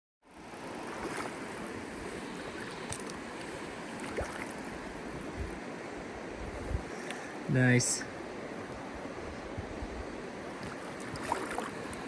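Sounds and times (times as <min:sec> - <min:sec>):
river current rushing: 0:00.4 - 0:06.3, 0:10.2 - 0:12.0.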